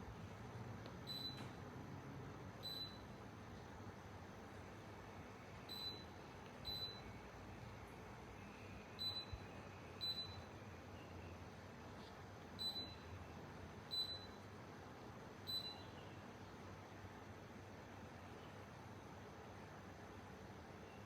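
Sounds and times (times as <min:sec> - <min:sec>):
air conditioner short high beeps: 0:01.0 - 0:01.7, 0:02.5 - 0:03.3, 0:05.4 - 0:11.6, 0:12.5 - 0:14.6, 0:15.3 - 0:16.4.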